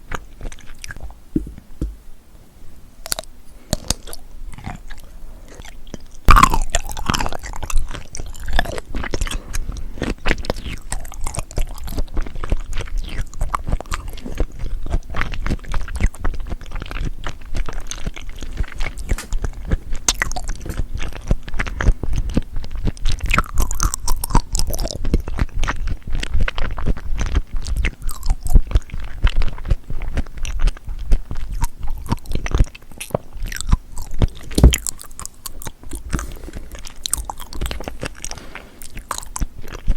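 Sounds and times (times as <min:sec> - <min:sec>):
chewing seafood: 0:00.0 - 0:01.2, 0:03.1 - 0:39.9
wet mouth clicks: 0:03.1 - 0:39.9.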